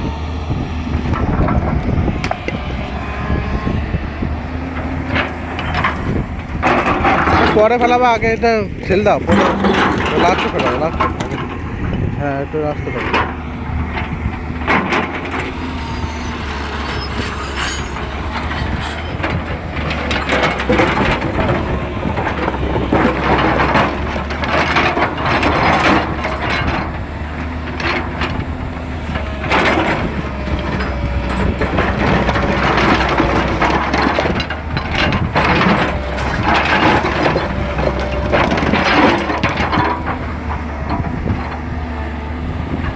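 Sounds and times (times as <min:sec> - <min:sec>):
excavator engine running: 0:00.0 - 0:42.9
bucket scraping stones and rubble: 0:05.1 - 0:13.4, 0:14.7 - 0:40.7.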